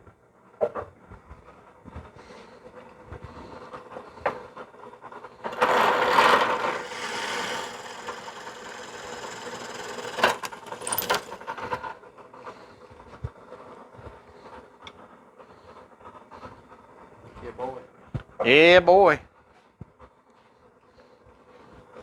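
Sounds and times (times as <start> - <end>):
drill press motor hum: 5.3 - 11.9
drill bit grinding: 5.4 - 11.8.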